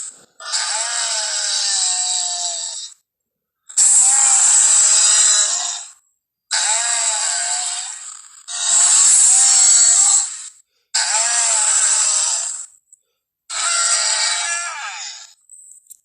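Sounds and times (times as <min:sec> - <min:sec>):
harsh creature calls: 0:00.0 - 0:03.0, 0:03.8 - 0:12.7, 0:13.5 - 0:15.4.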